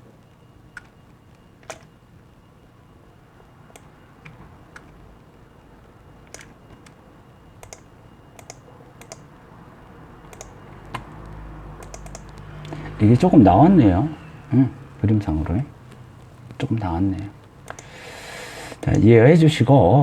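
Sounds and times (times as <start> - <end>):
faint mouse and keyboard clicks: 0.3 - 2.0, 6.2 - 7.0, 7.6 - 9.3, 10.2 - 12.9, 17.2 - 17.9.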